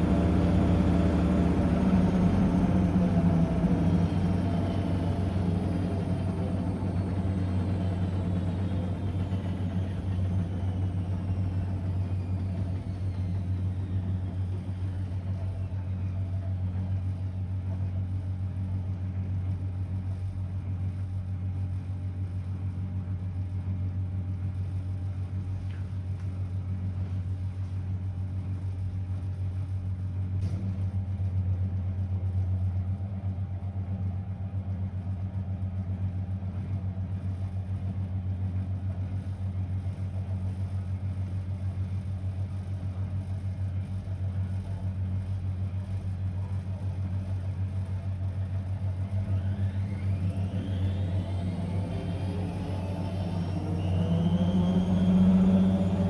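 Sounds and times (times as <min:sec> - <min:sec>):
faint whine falling in pitch: 0:00.0 - 0:16.2, 0:49.1 - 0:56.0
washing machine humming: 0:00.0 - 0:16.2, 0:49.0 - 0:56.0.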